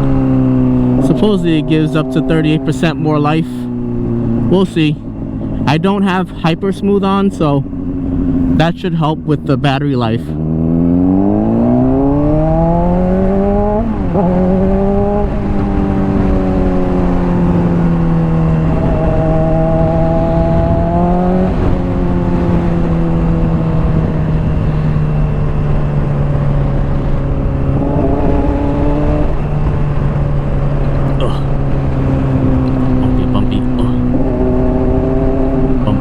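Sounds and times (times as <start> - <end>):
motorcycle engine revving: 0.0 - 8.8, 10.3 - 36.0
wind noise: 10.5 - 36.0.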